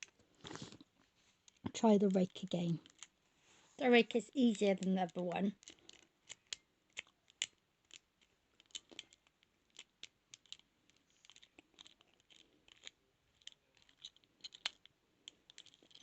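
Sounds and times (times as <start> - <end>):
lock pick clicking and scratching: 2.3 - 3.2, 4.4 - 16.0.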